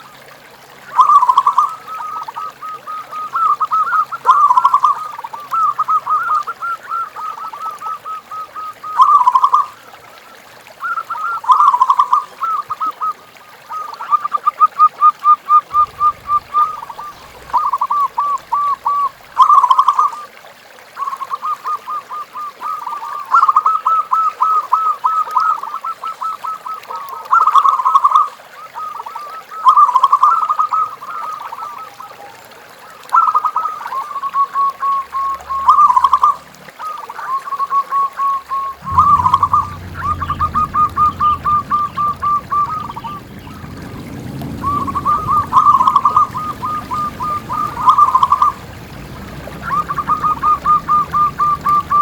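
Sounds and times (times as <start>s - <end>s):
dove cooing: 15.8s - 19.9s, 38.6s - 52.0s.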